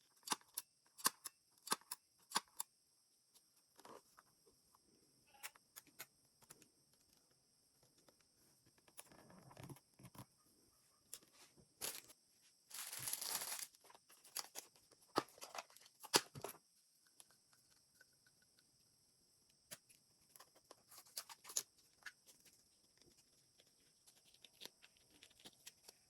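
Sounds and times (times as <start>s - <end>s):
packaging clicks and rustles: 12.7s - 16.5s.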